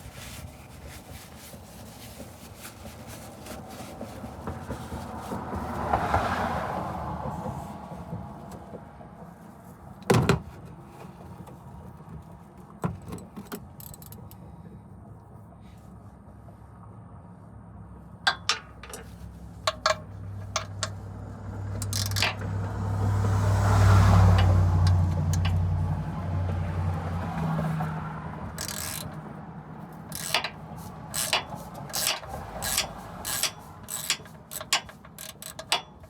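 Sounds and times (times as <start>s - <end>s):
metal tools clinking: 18.3s - 21.0s, 21.8s - 22.6s, 24.3s - 25.6s, 28.6s - 29.2s, 30.0s - 36.0s.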